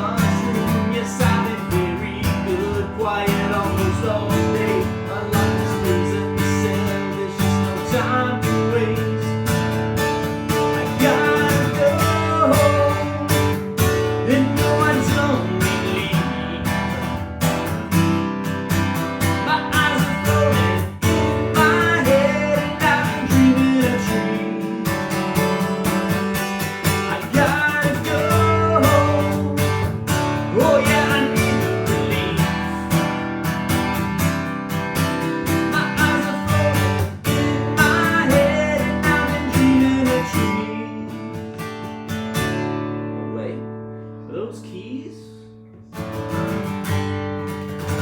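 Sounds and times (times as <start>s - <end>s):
acoustic guitar strumming: 0.0s - 48.0s
sliding melody line: 35.0s - 40.8s.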